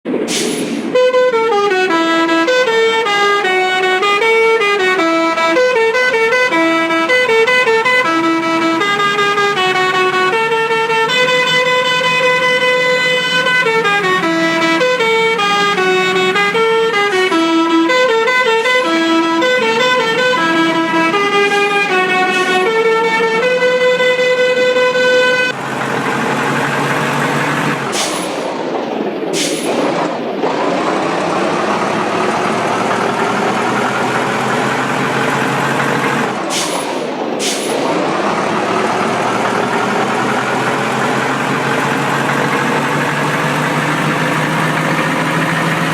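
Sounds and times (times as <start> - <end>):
vehicle engine: 0.0 - 45.9
musical horn playing a tune: 1.0 - 25.6.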